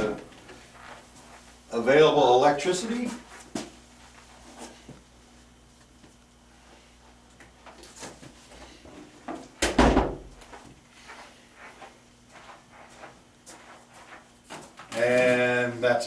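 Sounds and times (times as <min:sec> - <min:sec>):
loud thump: 0:09.6 - 0:10.3.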